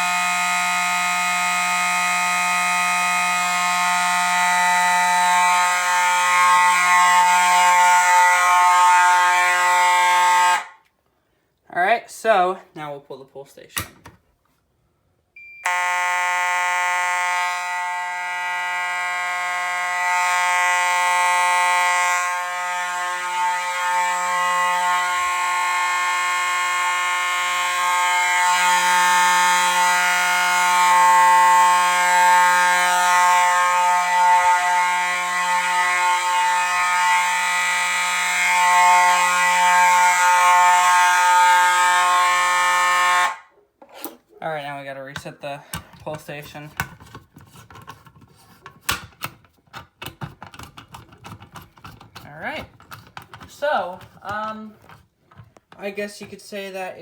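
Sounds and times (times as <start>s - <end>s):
fire alarm horn buzzing: 0.0s - 10.9s, 15.4s - 43.6s.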